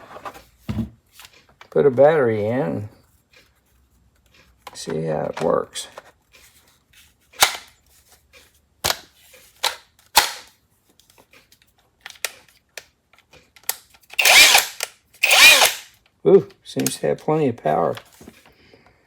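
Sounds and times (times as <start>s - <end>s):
tool being handled: 13.2s - 16.1s
impact wrench motor whirring: 14.2s - 15.9s.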